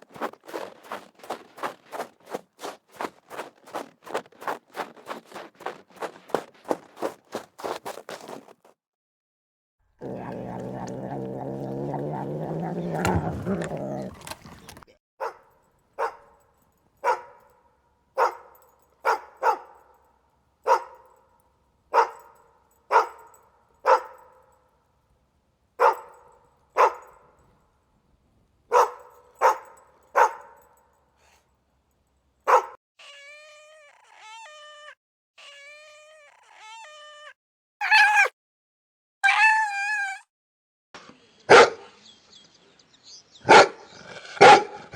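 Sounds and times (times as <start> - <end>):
dog barking: 15.2 - 16.4, 17.0 - 19.9, 20.7 - 21.2, 21.9 - 24.5, 25.8 - 27.2, 28.7 - 30.7, 32.4 - 32.8, 41.5 - 41.9, 43.4 - 44.9.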